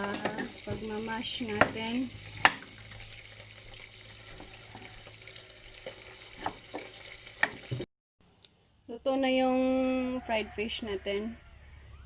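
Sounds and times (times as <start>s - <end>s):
fish sizzling in hot oil: 0.0s - 7.9s.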